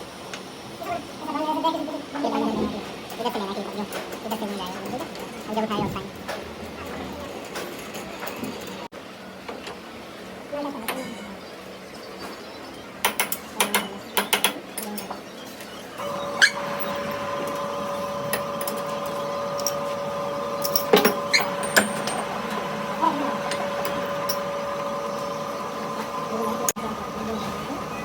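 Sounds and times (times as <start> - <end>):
machine humming: 15.9 - 28.0
metal clinks: 18.2 - 22.7.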